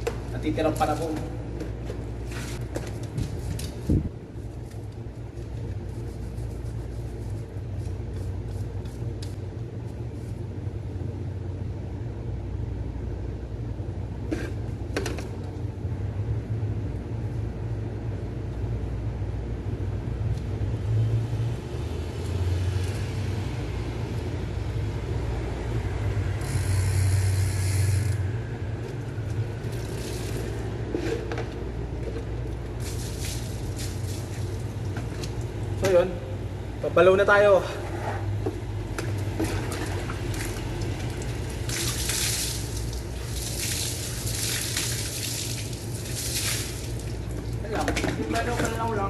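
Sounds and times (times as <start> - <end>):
steady low hum: 0.0 - 49.0
bicycle hub ratchet ticking: 26.4 - 28.2.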